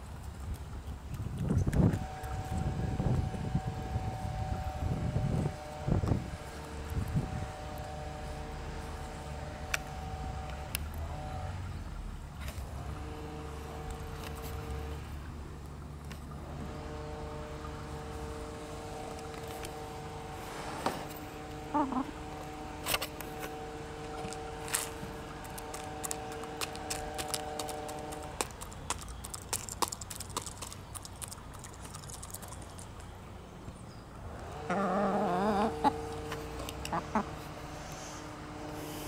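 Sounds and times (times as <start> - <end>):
steady background hum: 0.0 - 39.0
chicken wavering call: 21.6 - 22.4, 34.6 - 38.1.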